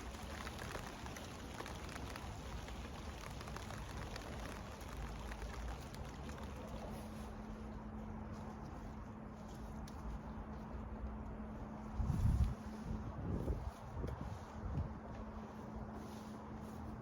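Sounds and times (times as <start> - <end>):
light rain drops ticking: 0.0 - 7.7.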